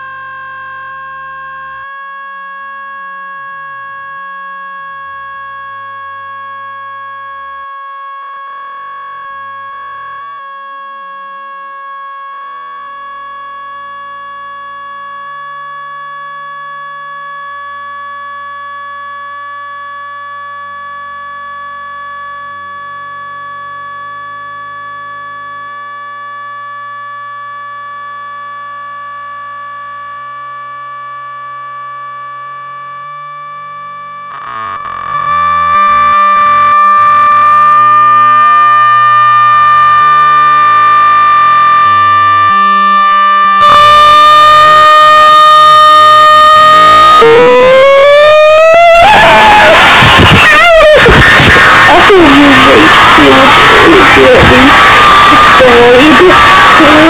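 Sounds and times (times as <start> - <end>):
droning electronic tone: 30.8 - 57.0
low notes: 46.8 - 54.4.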